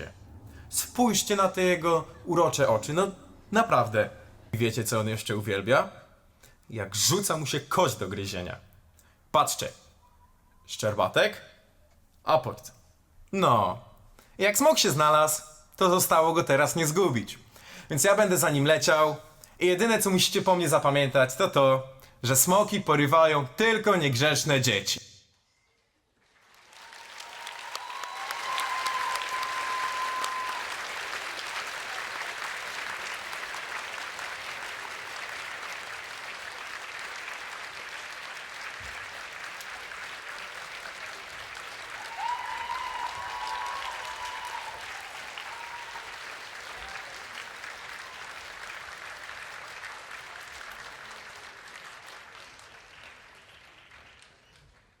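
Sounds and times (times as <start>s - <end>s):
audience applauding: 26.2s - 55.0s.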